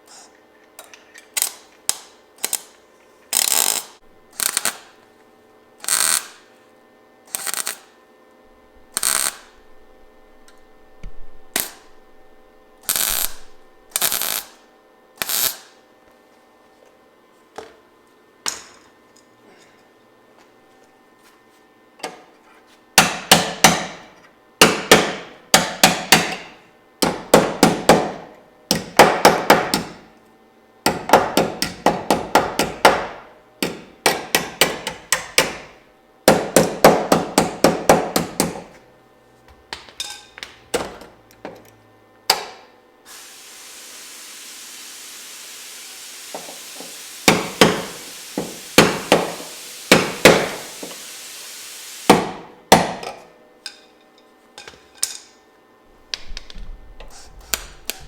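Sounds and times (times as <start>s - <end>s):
steady hiss: 43.1s - 52.4s
hammer striking sheet metal: 47.2s - 50.7s.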